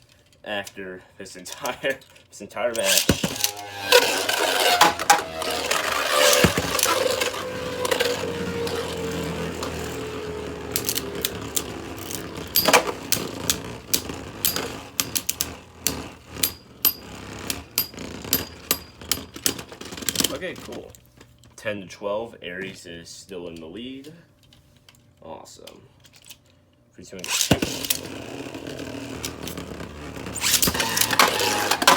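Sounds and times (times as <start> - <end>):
spinning tops clattering: 2.8 - 20.4, 27.3 - 31.9
spinning tops whirring: 2.8 - 20.5, 27.3 - 31.9
tops clicking and knocking: 2.9 - 20.4.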